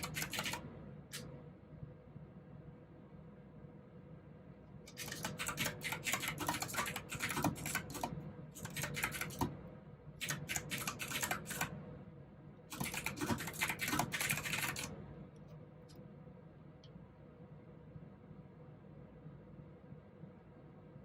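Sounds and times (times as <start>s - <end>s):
clicky mechanical keyboard typing: 0.0s - 1.3s, 4.9s - 9.6s, 10.2s - 11.8s, 12.7s - 15.0s.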